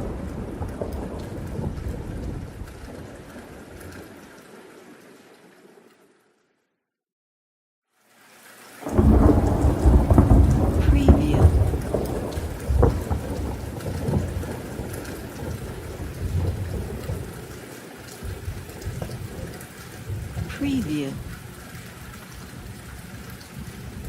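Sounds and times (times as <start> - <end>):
deep rolling thunder: 0.0 - 3.6, 8.8 - 17.4
steady rain: 0.0 - 6.7, 7.9 - 24.0.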